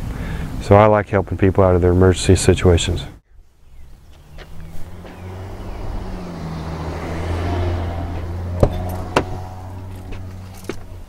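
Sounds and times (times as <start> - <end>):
motor vehicle passing by: 3.6 - 11.0.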